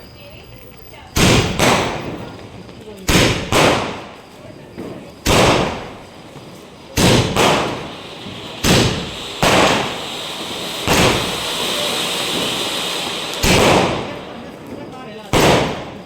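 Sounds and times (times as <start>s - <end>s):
firecrackers bursting: 0.0s - 16.0s
steady hiss: 5.1s - 16.0s.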